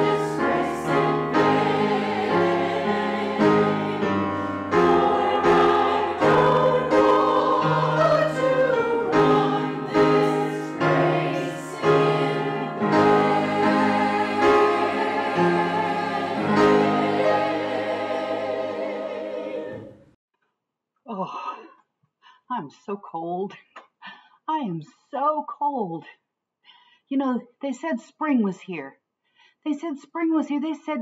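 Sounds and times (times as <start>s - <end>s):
instrumental accompaniment: 0.0s - 20.0s
choir singing a hymn: 0.0s - 20.1s.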